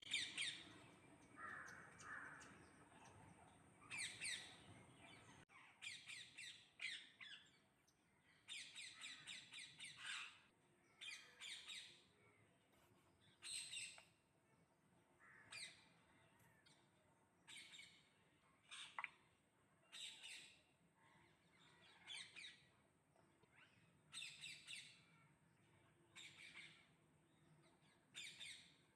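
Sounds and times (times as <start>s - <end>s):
birds calling harsh repeated notes: 0.0s - 2.9s.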